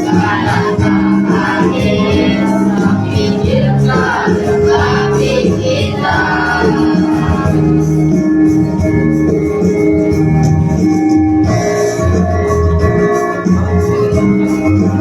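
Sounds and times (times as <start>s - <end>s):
children's choir singing: 0.0s - 8.4s.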